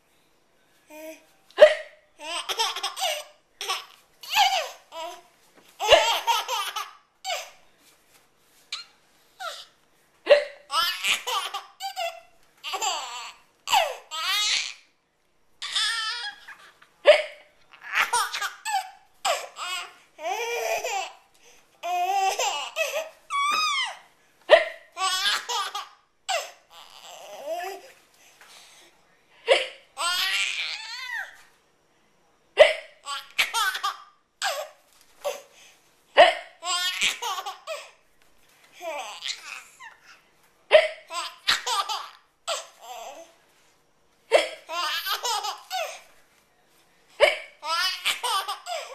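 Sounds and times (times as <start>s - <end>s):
baby laughing: 1.6s - 5.2s, 5.8s - 7.6s, 10.3s - 14.8s, 15.6s - 21.2s, 21.8s - 27.9s, 30.0s - 31.4s, 33.0s - 35.4s, 36.2s - 37.9s, 38.8s - 40.1s, 40.7s - 43.3s, 44.3s - 46.0s, 47.3s - 48.9s.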